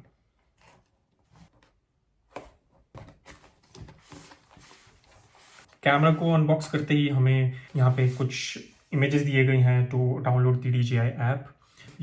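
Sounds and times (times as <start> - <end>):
cardboard box being handled: 2.3 - 6.9.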